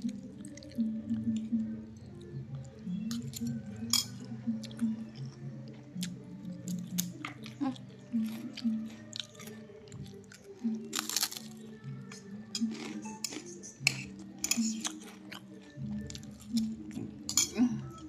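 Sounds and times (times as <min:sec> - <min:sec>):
background music: 0:00.0 - 0:18.0
tableware clinking: 0:03.9 - 0:04.2, 0:13.2 - 0:14.8, 0:17.3 - 0:17.6
person chewing crunchy food: 0:08.2 - 0:11.6, 0:12.6 - 0:17.3.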